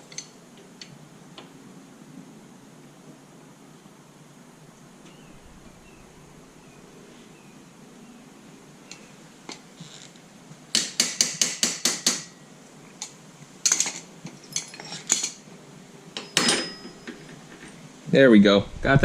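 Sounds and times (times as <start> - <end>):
metal tools tapping on metal: 0.0 - 0.9, 13.0 - 15.4, 16.2 - 17.8.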